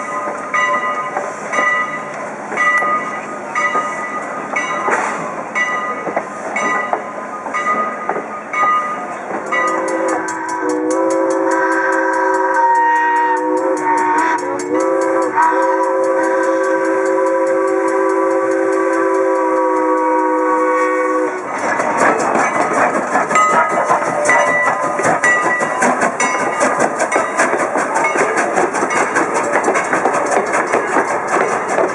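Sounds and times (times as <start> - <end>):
moving train rumbling and clatter: 0.0 - 31.9
train clicking: 0.0 - 31.9
steam whistle blast: 9.8 - 21.5.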